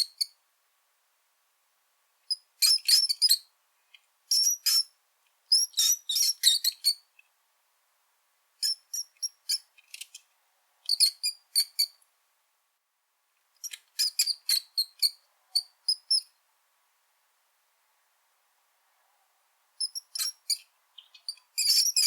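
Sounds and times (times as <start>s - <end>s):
rat squeaking: 2.3s - 3.4s, 4.3s - 4.9s, 5.5s - 7.1s, 8.6s - 10.2s, 10.9s - 12.0s, 13.6s - 16.3s, 19.8s - 22.0s.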